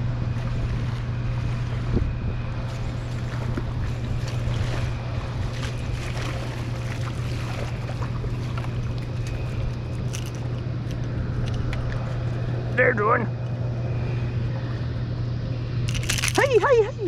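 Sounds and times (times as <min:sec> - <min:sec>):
water splashes: 0:00.0 - 0:10.5
boat motor humming: 0:00.0 - 0:17.0
water noise: 0:00.0 - 0:17.0
wind: 0:00.0 - 0:17.0.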